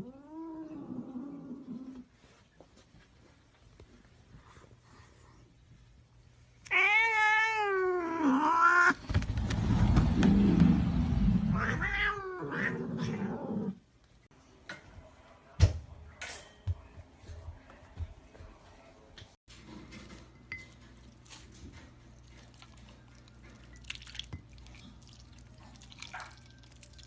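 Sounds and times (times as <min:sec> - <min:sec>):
cat yowling: 0:06.7 - 0:09.0
low rumbling noise: 0:09.0 - 0:11.8.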